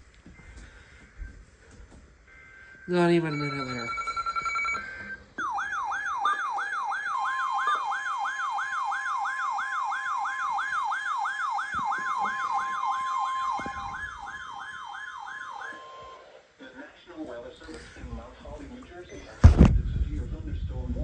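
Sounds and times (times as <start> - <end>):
electronic siren alert tone: 2.3 - 16.4.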